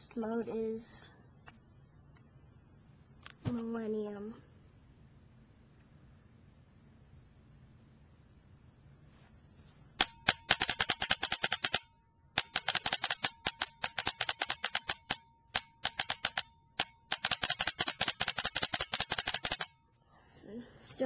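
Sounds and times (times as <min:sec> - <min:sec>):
faint steady tone: 0:13.3 - 0:17.2.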